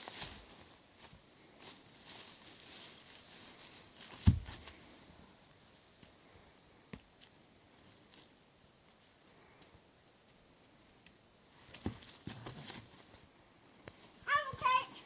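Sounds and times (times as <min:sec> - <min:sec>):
light rustling and scuffing: 0:00.0 - 0:05.1, 0:11.5 - 0:15.0
heavy thump: 0:04.2 - 0:04.6.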